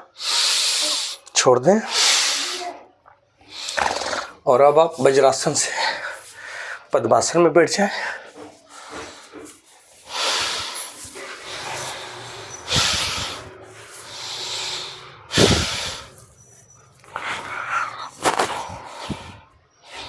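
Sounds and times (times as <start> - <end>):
heavy breathing through nose: 0.0 - 1.2, 1.8 - 2.8, 5.6 - 6.9, 7.9 - 16.4, 17.0 - 20.0
forceful snorting exhales: 3.5 - 4.4, 10.1 - 16.2.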